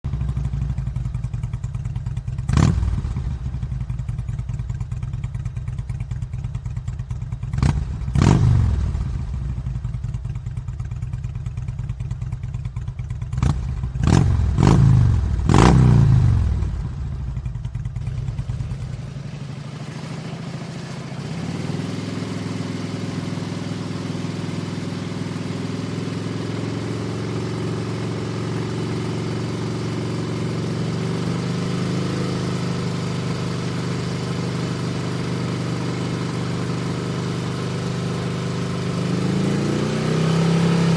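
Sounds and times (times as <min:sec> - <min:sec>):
motorcycle engine idling: 0:00.0 - 0:39.7
engine revving in throttle blips: 0:13.4 - 0:16.9, 0:37.6 - 0:40.9.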